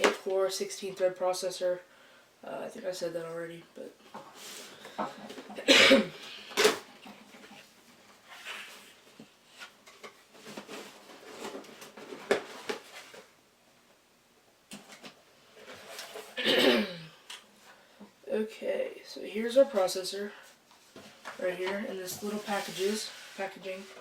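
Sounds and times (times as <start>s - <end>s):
packaging rustling and scraping: 6.5s - 13.4s, 22.1s - 24.0s.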